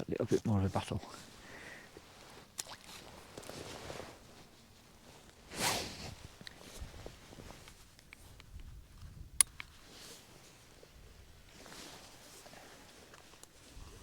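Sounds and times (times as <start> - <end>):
rustling: 1.2 - 10.9
light handling clicks: 9.4 - 9.8.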